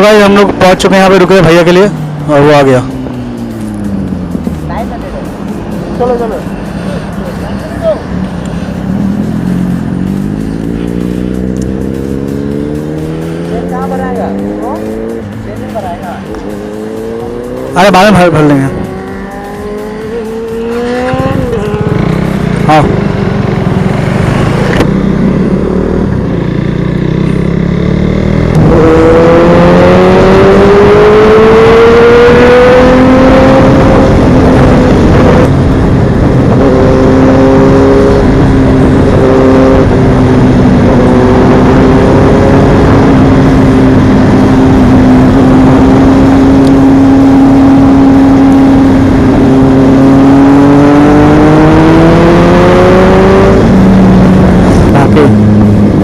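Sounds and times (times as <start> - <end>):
motorcycle engine accelerating: 0.0 - 56.0.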